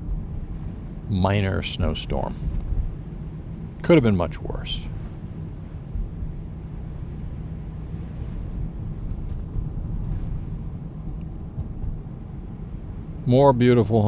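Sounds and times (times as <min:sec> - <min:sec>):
car engine and tyre rumble: 0:00.0 - 0:14.0.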